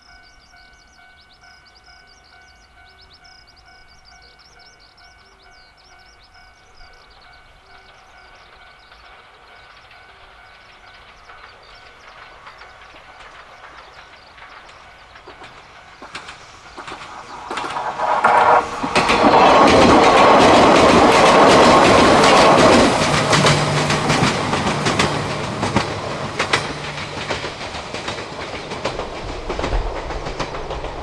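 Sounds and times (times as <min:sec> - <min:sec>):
train passing: 0:00.0 - 0:31.0
train wheel clatter: 0:07.8 - 0:31.0.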